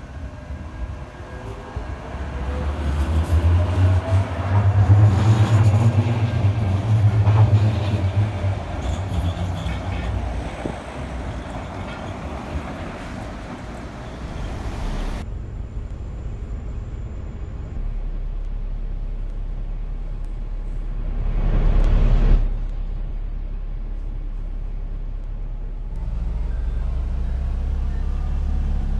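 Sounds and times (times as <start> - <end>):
tram low hum: 0.0 - 28.9
steady low rumble: 14.2 - 28.9.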